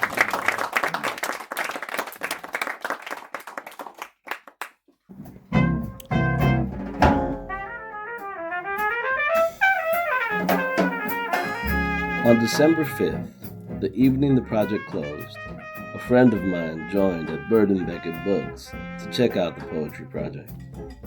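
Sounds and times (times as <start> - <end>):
scattered clapping: 0.0 - 4.8
jazz drums and bass: 5.1 - 21.0
trumpet melody: 5.5 - 20.5.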